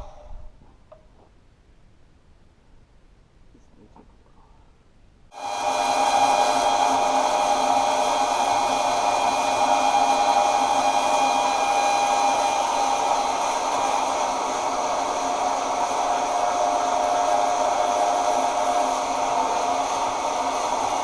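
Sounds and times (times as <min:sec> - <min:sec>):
power tool motor whining: 0:05.4 - 0:21.0.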